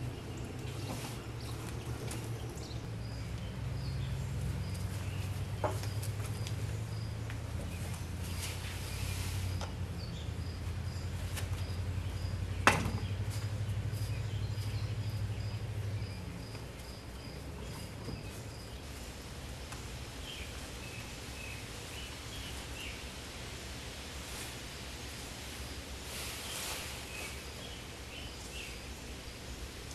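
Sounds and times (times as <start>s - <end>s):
low steady hum: 0.0s - 29.9s.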